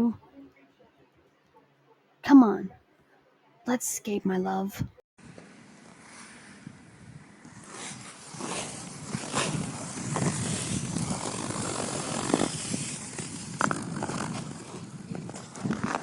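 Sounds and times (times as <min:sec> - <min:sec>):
ice skates scraping on ice: 0:05.4 - 0:16.0.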